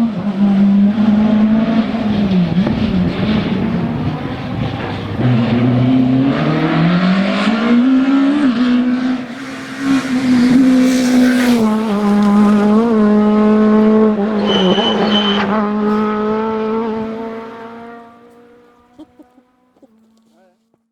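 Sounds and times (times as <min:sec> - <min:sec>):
rally car engine at high revs: 0:00.0 - 0:20.2
short high squeal: 0:14.1 - 0:16.4.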